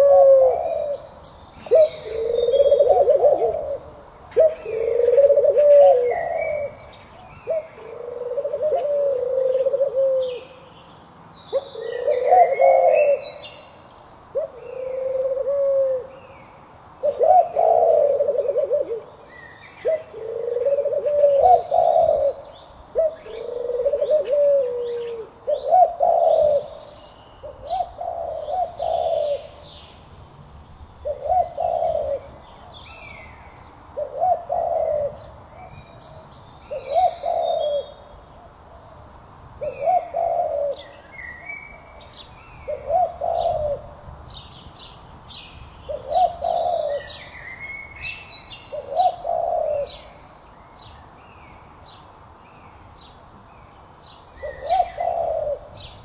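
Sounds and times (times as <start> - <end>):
pigeons cooing: 0.0 - 10.6, 11.5 - 13.6, 14.3 - 16.2, 17.0 - 29.7, 31.0 - 38.9, 39.6 - 44.1, 45.9 - 47.6, 48.6 - 50.3, 54.3 - 56.0
small birds chirping: 44.3 - 56.0.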